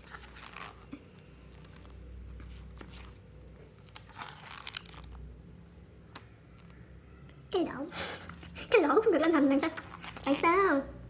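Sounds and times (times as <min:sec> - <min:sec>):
paper pages rustling: 0:00.0 - 0:05.2, 0:08.3 - 0:10.5.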